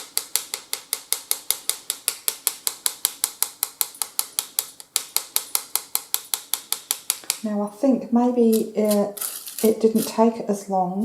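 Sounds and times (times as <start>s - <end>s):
sifter clicking rapidly: 0.0s - 7.6s.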